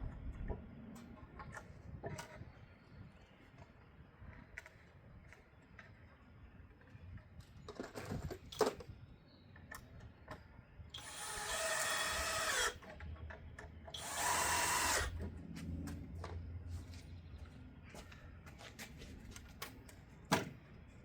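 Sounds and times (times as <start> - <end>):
power drill driving screws into wood: 11.0 - 12.9, 13.9 - 15.2.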